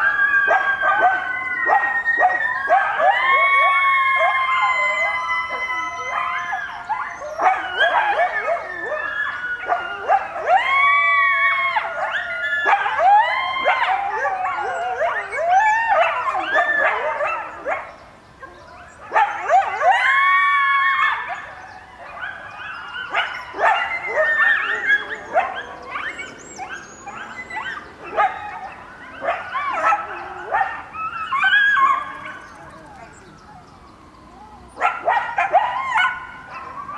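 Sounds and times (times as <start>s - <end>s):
siren: 0.0s - 10.8s, 31.4s - 34.8s
coyotes howling and yipping: 0.0s - 36.9s.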